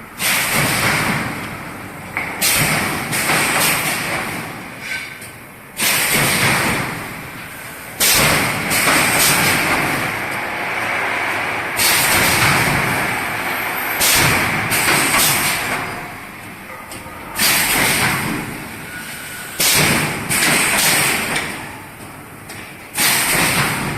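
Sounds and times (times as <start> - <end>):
loud bursts of welding noise: 0.0 - 16.7, 17.4 - 23.9
steady machine din: 6.6 - 19.0.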